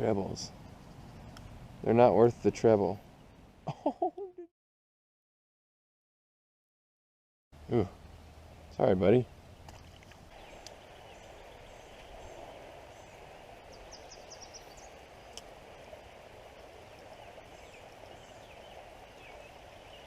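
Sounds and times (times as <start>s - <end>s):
creek water running: 7.6s - 20.0s.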